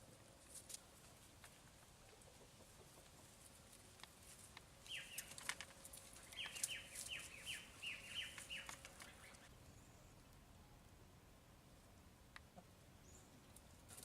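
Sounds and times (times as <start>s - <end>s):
small bird chirping: 4.8s - 5.4s, 6.1s - 10.2s.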